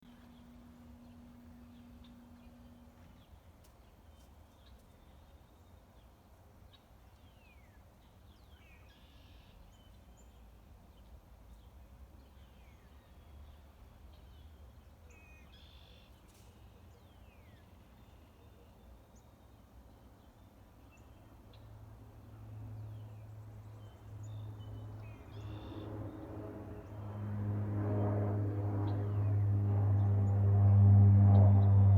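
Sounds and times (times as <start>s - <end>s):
low steady rumble: 23.3s - 31.9s.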